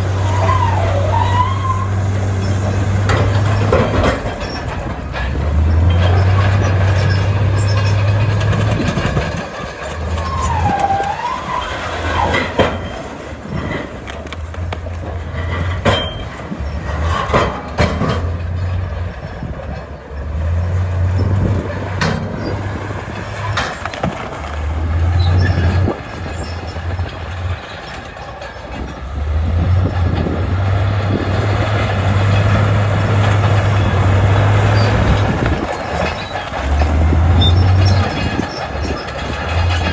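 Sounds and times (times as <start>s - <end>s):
bulldozer diesel engine droning: 0.0s - 39.9s
metallic clanks and knocks: 0.0s - 39.9s
brief squeal: 0.2s - 2.6s.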